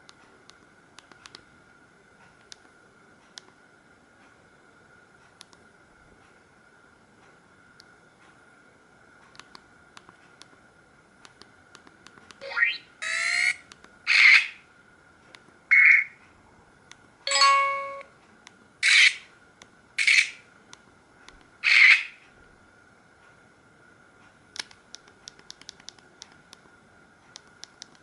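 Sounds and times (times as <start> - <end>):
phone ringtone sound effects: 17.3 - 18.1.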